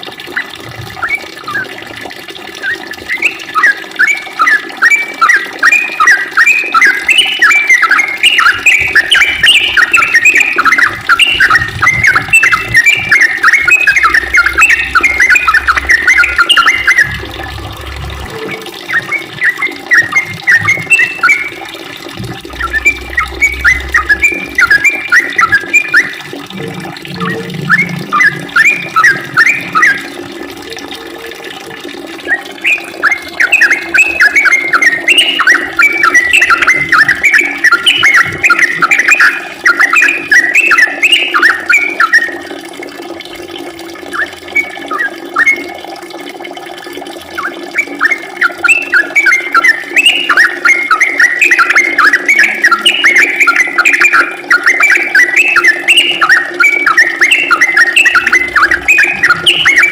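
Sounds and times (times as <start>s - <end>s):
bird chirping song: 2.6s - 21.6s, 22.2s - 31.4s, 32.2s - 42.3s, 47.4s - 59.9s.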